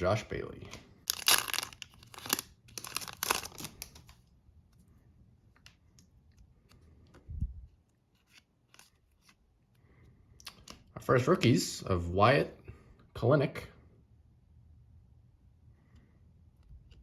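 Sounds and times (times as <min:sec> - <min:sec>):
cards being handled: 0:00.6 - 0:09.8
foil wrapper crinkling and tearing: 0:01.0 - 0:04.2.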